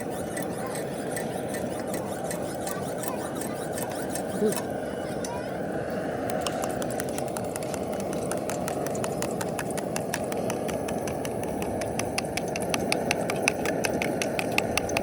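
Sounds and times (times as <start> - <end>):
quick sharp tapping: 6.2 - 15.0.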